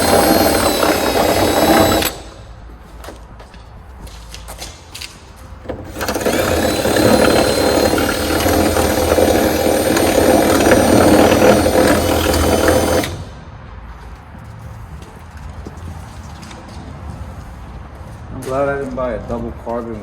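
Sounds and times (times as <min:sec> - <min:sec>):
power drill drilling: 0:00.0 - 0:02.4, 0:05.8 - 0:13.3.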